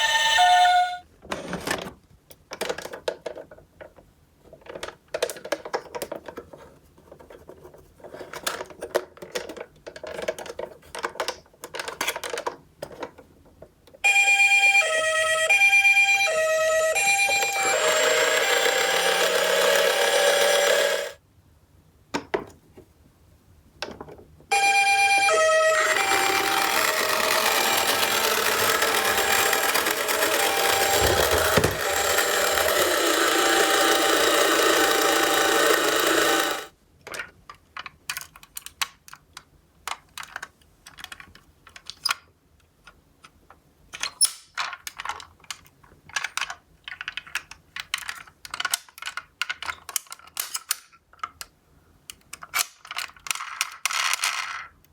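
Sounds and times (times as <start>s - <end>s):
toy siren two-tone wail: 0.0s - 1.0s, 14.0s - 21.2s, 24.5s - 36.7s
toy cars clattering on cardboard: 25.3s - 39.1s, 52.4s - 54.8s.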